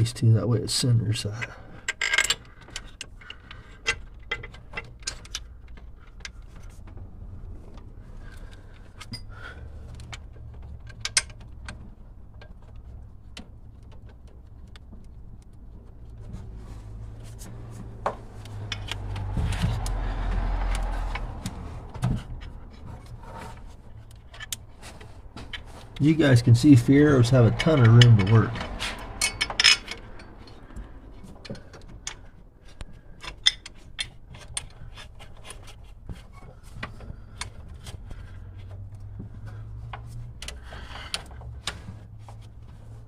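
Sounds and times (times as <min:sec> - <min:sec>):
metal parts clicking and clinking: 0:01.3 - 0:06.8, 0:08.8 - 0:09.3, 0:09.9 - 0:12.9, 0:22.0 - 0:32.3, 0:33.2 - 0:38.0
rushing noise with low rumble: 0:15.8 - 0:32.6.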